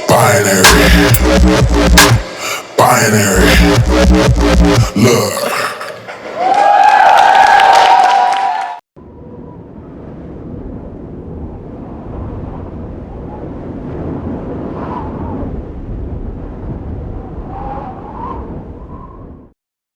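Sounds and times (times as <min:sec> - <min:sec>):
audience applauding and cheering: 0:06.2 - 0:08.8.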